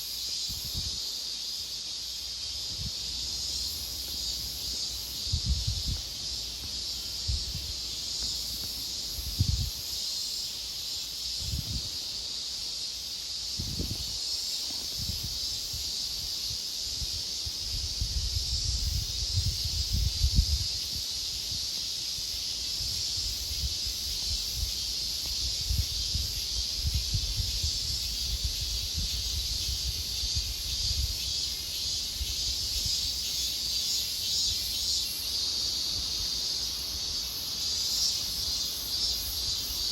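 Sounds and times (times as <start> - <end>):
high-pitched insect chorus: 0.0 - 39.9.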